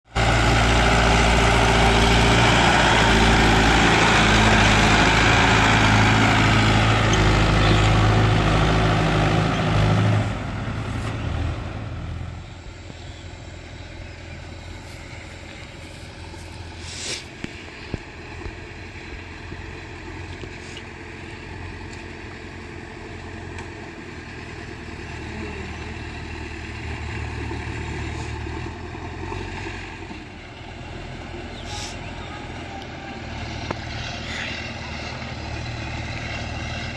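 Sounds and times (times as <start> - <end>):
heavy diesel engine running: 0.0 - 36.9.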